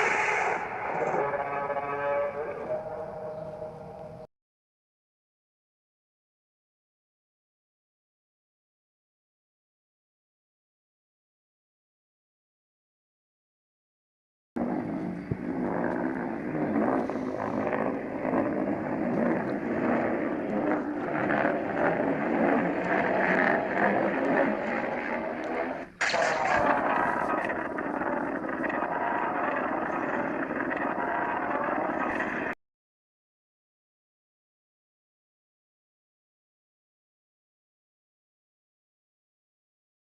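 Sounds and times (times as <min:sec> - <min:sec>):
continuous noisy sound effect: 0:00.0 - 0:04.3, 0:14.6 - 0:32.6.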